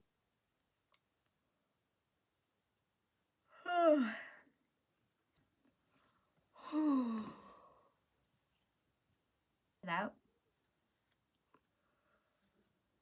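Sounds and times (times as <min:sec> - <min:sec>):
woman yawning: 0:03.6 - 0:04.4, 0:06.6 - 0:07.6.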